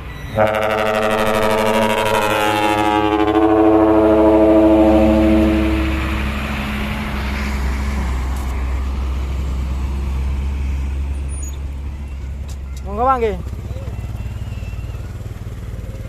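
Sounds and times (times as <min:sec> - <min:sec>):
diesel truck rumbling: 0:00.0 - 0:16.0
truck air horn chord: 0:00.2 - 0:08.1.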